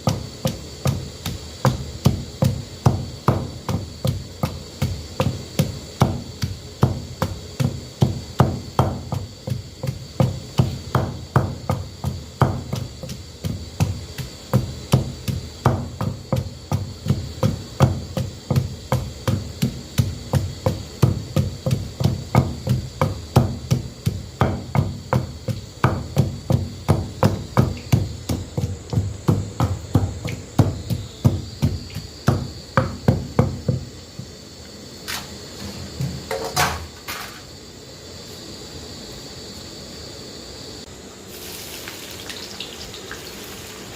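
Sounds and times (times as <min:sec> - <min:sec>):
knife chopping ingredients: 0:00.1 - 0:33.9.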